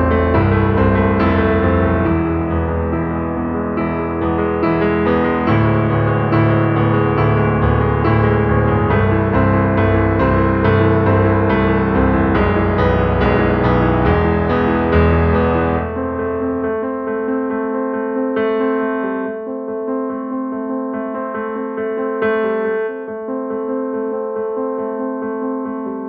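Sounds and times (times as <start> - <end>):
bass line: 0.0 - 16.0
piano background music: 0.0 - 26.0.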